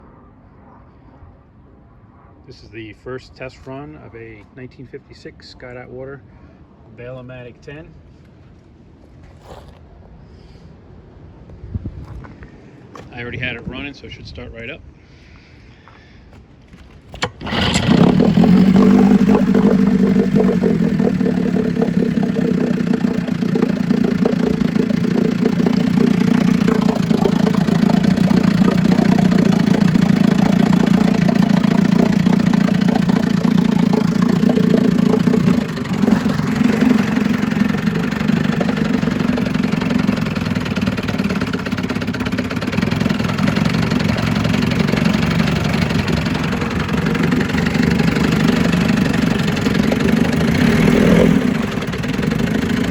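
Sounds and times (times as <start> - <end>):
outboard motor starting and running: 16.7 - 52.9.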